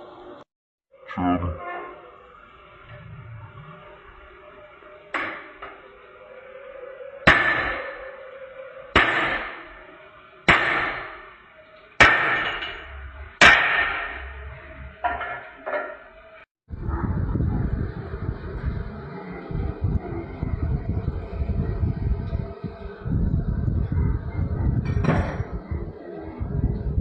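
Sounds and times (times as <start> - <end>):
hammer blows on metal: 7.2 - 8.2, 8.9 - 9.8, 12.0 - 15.2.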